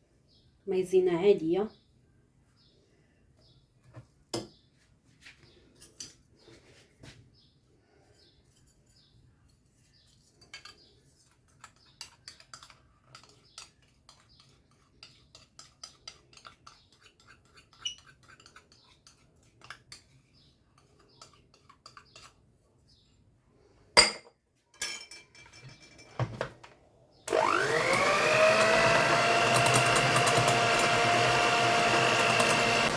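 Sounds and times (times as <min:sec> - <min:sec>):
utensil tapping mixing bowl: 0:27.3 - 0:32.9.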